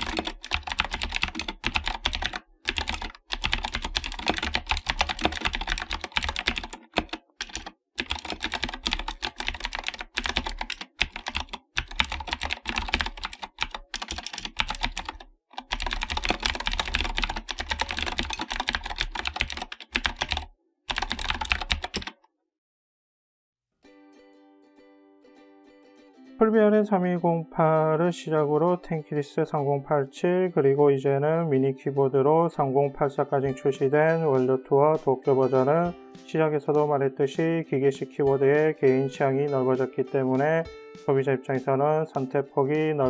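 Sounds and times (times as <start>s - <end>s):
fast mechanical keyboard typing: 0.0s - 22.2s.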